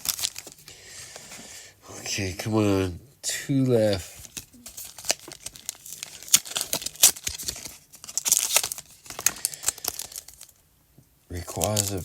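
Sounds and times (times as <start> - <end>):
foil wrapper crinkling and tearing: 0.0 - 1.3, 3.7 - 10.6, 11.3 - 12.0.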